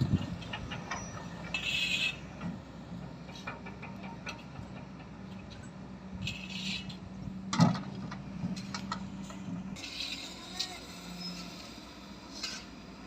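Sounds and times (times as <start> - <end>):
diesel engine running: 0.0 - 13.0
clicks and clanks: 3.2 - 9.4.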